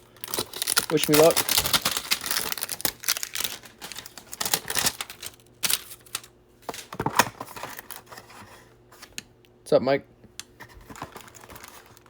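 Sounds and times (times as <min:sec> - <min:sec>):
card wrapper rustling: 0:00.0 - 0:08.2, 0:10.6 - 0:12.0.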